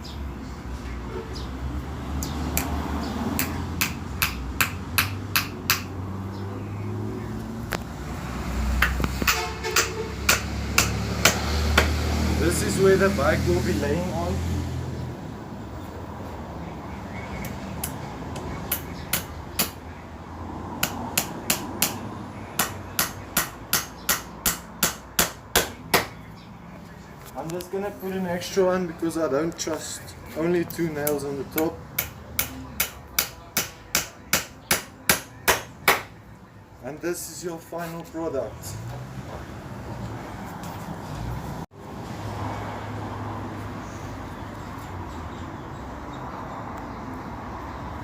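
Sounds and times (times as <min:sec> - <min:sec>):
hammer striking nail into wood: 0:03.4 - 0:05.9, 0:08.8 - 0:12.0, 0:18.7 - 0:19.8, 0:20.8 - 0:22.0, 0:22.6 - 0:26.2, 0:32.0 - 0:36.1.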